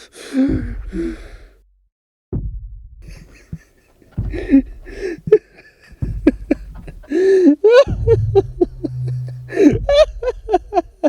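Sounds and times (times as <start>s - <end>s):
man gasping and groaning: 0.0s - 1.6s, 6.8s - 7.6s
hysterical laughter: 3.0s - 11.0s
low rumble: 4.2s - 5.2s, 5.9s - 11.0s.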